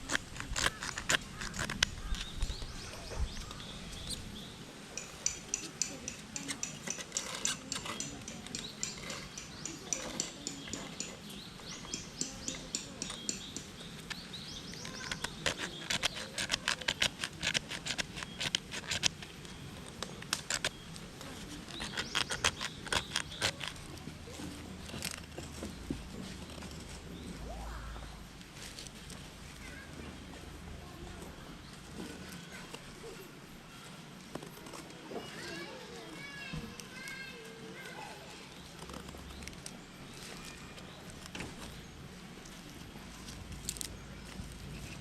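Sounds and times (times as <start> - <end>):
knife scraping fire-starter block: 0.0 - 4.2, 5.0 - 27.0.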